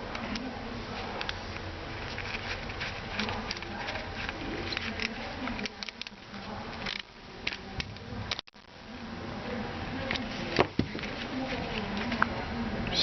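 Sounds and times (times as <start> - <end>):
small parts clicking and tapping: 2.0 - 8.7.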